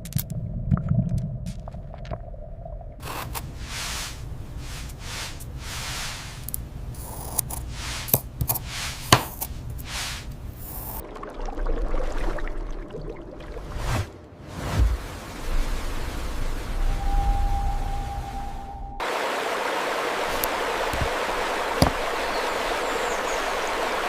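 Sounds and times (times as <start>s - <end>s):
low hiss: 3.0s - 11.0s
rough scraping strokes: 3.0s - 11.0s.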